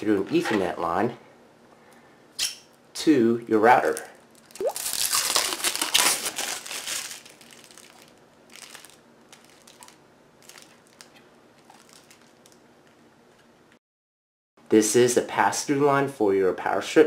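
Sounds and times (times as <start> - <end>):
packaging crinkling: 3.8 - 13.0.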